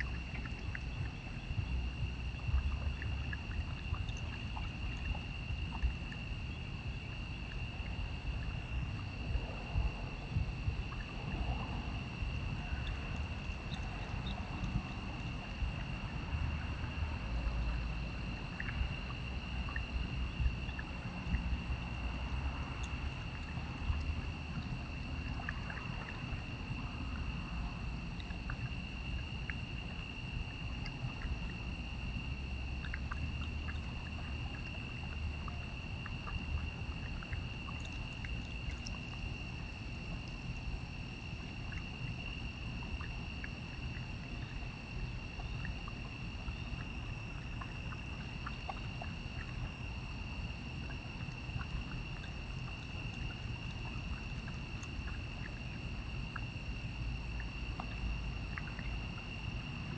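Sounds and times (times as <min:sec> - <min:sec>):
low rumble: 0:00.0 - 0:28.7
night insects chorus: 0:00.0 - 0:59.9.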